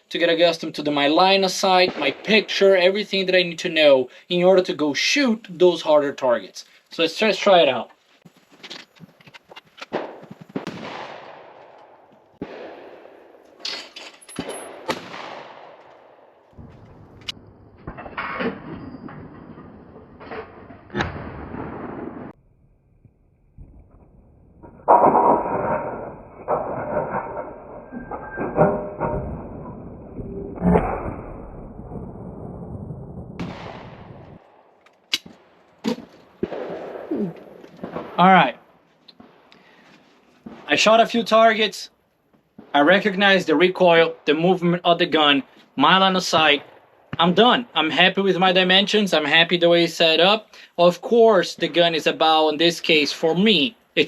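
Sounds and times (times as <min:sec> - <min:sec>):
shotgun shots with echo: 0:09.9 - 0:13.4, 0:14.4 - 0:16.7, 0:33.4 - 0:34.3, 0:35.3 - 0:37.1.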